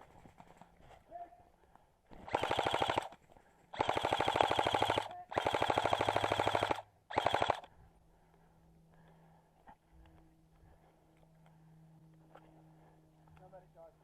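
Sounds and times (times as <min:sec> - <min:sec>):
airsoft rifle firing full auto: 0:02.2 - 0:07.7.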